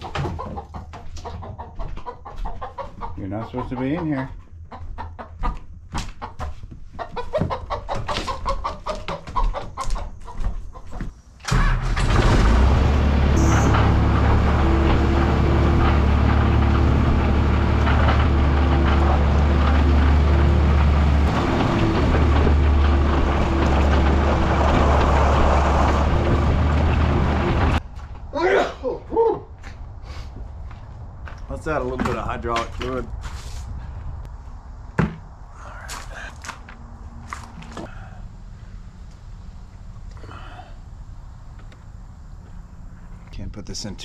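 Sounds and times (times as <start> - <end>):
chickens clucking: 0.0 - 11.1
engine running with low drone: 11.5 - 28.2, 29.6 - 43.8.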